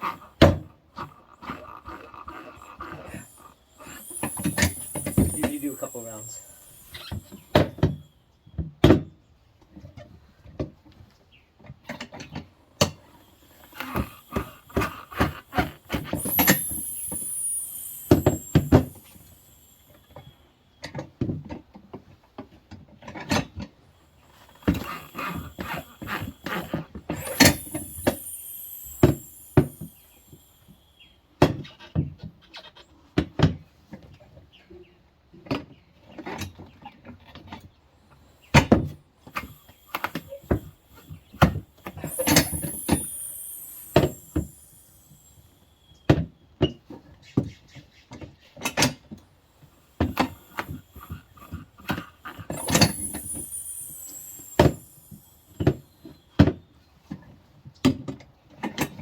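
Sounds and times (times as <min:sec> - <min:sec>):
high squeal falling in pitch: 0:02.6 - 0:08.1, 0:13.0 - 0:20.5, 0:24.0 - 0:31.2, 0:39.3 - 0:46.1, 0:49.8 - 0:56.4.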